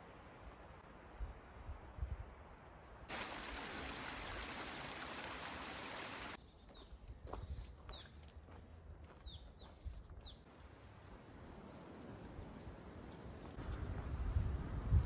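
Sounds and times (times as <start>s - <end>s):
rushing water: 3.1s - 6.4s.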